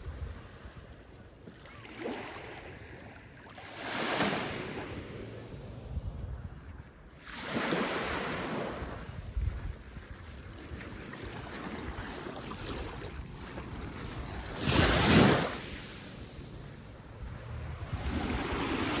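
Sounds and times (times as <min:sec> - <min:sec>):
wind buffeting microphone: 0:00.0 - 0:01.2, 0:05.4 - 0:07.1, 0:08.4 - 0:19.0
ocean surf on beach: 0:14.5 - 0:19.0.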